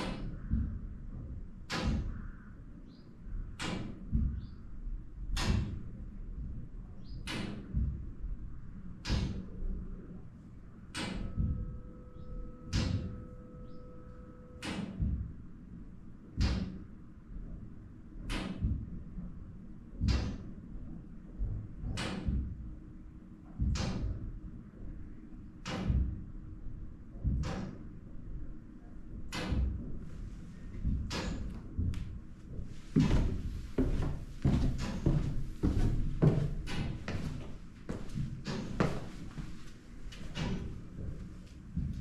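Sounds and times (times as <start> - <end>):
faint two-note tone: 11.4 - 14.6.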